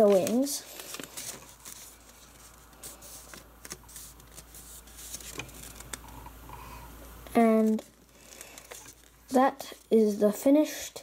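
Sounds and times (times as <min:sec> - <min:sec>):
paper rustling and tapping: 0:00.0 - 0:06.0.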